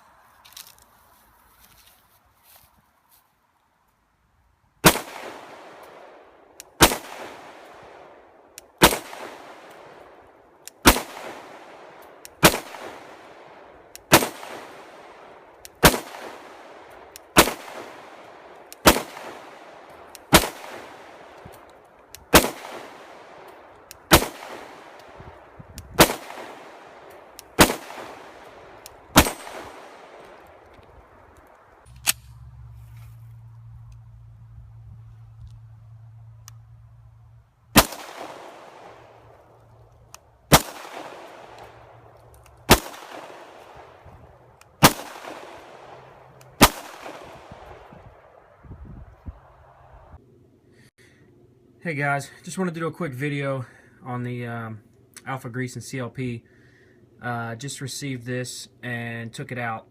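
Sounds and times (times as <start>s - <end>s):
pistol shots echoing: 4.8s - 21.5s, 22.3s - 25.2s, 26.0s - 30.6s, 37.8s - 39.3s, 40.5s - 42.1s, 42.7s - 44.0s, 44.8s - 47.8s.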